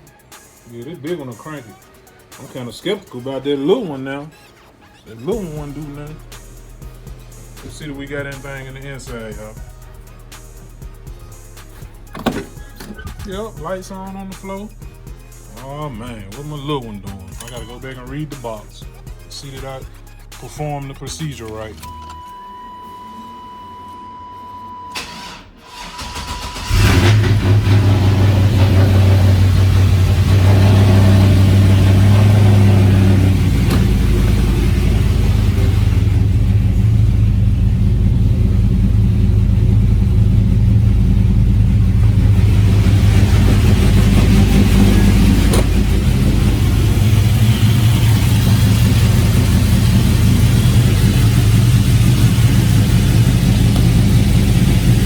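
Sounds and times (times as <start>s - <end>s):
car engine idling: 25.7s - 55.0s.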